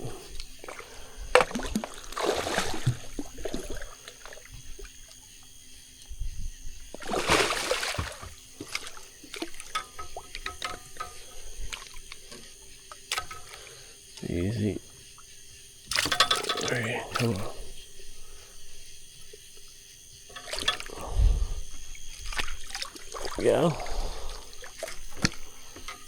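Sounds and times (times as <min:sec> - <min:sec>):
water splashing: 0:00.6 - 0:04.5, 0:07.0 - 0:09.8, 0:22.1 - 0:25.4
water sloshing: 0:00.6 - 0:04.9, 0:06.9 - 0:12.3, 0:20.3 - 0:26.0
fish thrashing in water: 0:01.4 - 0:04.4, 0:07.0 - 0:09.7.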